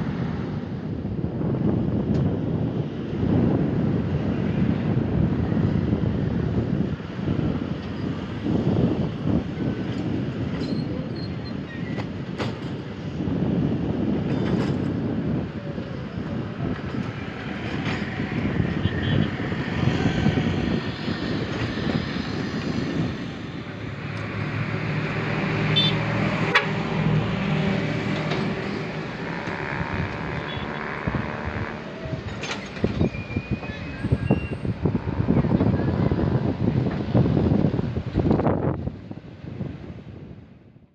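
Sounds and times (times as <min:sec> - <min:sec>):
excavator diesel engines running: 0:13.7 - 0:38.2.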